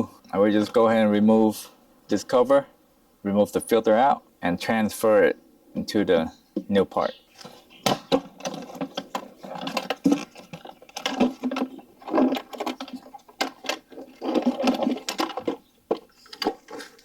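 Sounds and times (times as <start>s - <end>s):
plastic box rattling and clicking: 7.9s - 17.0s.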